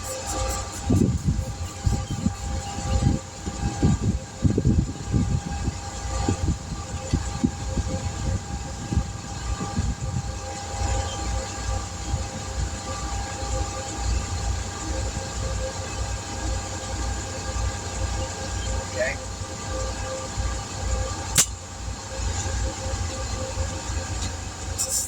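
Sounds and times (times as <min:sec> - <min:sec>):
machine rumbling and humming: 0:00.0 - 0:25.0.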